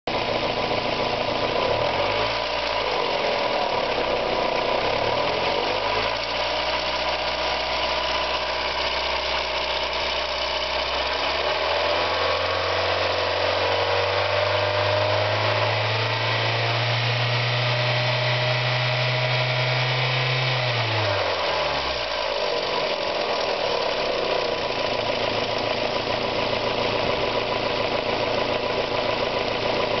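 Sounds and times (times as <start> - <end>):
car engine revving: 1.2 - 30.0
engine ticking: 21.8 - 30.0.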